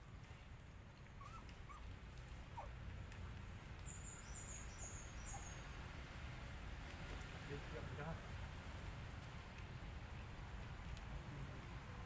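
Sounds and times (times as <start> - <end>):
faint puppy or kitten squeaks: 1.2 - 1.8.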